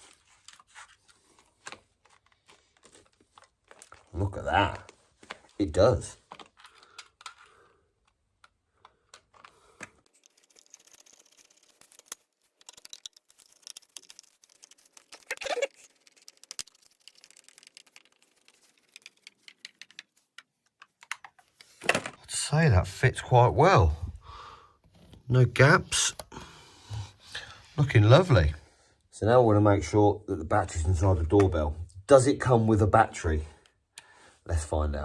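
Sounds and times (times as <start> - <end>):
small clicks and rattles of handling: 0.0 - 22.2.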